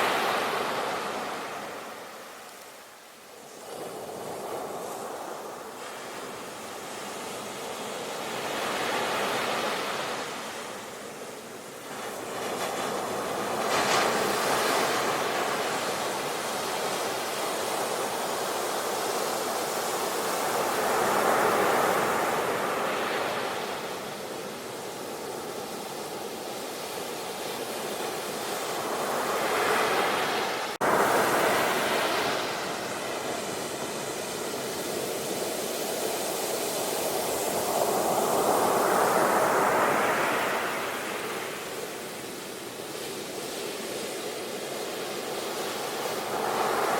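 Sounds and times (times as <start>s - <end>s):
sea waves surging: 0.0s - 46.9s.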